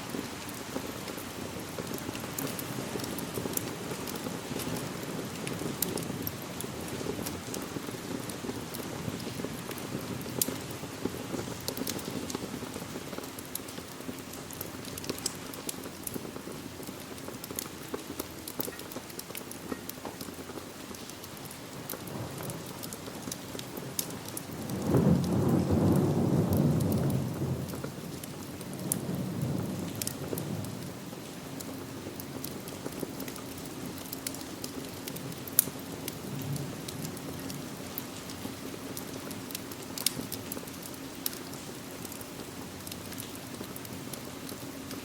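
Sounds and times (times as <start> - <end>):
steady rain: 0.0 - 45.0
wood fire crackling and popping: 0.0 - 45.0
thunder rumbling: 24.0 - 31.0.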